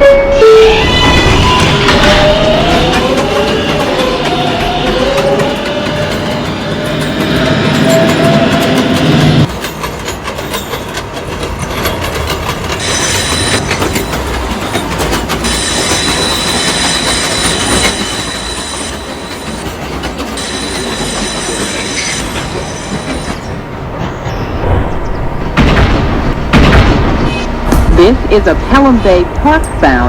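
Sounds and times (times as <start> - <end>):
high squealing tones: 0.0 - 5.8
train wheels clattering: 1.2 - 24.5.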